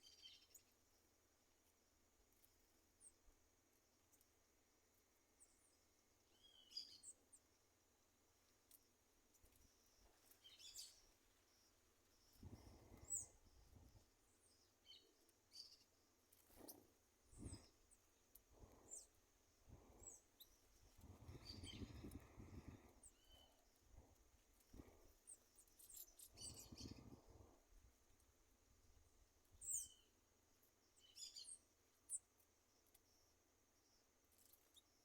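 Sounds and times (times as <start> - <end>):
wild birds chirping: 5.4 - 7.7, 9.3 - 27.8, 29.5 - 30.2.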